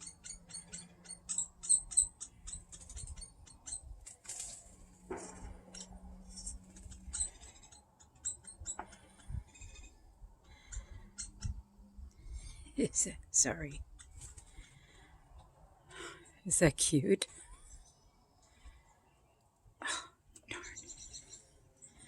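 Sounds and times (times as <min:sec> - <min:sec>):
woodpeckers chattering: 0:00.0 - 0:04.0, 0:05.2 - 0:15.1, 0:19.9 - 0:22.0.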